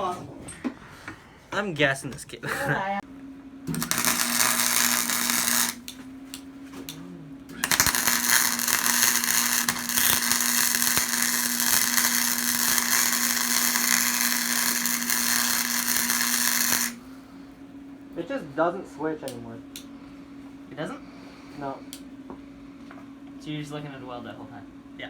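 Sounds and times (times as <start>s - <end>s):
faint steady hum: 0.0s - 25.0s
arc welding crackling: 3.7s - 7.0s, 7.6s - 17.0s.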